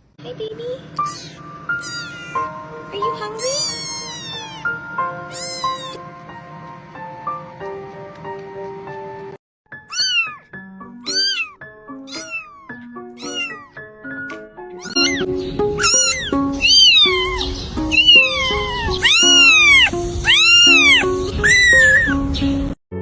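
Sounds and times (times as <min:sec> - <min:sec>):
cat meowing: 0:01.0 - 0:06.0, 0:09.8 - 0:13.8, 0:14.8 - 0:22.2
background music: 0:01.0 - 0:22.8.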